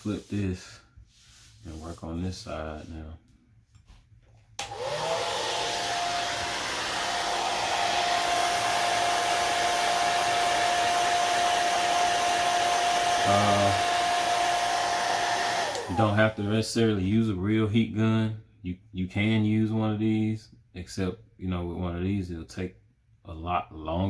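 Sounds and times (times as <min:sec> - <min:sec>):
hair dryer motor whine: 0:04.6 - 0:16.4
rush of blowing air: 0:04.7 - 0:16.2.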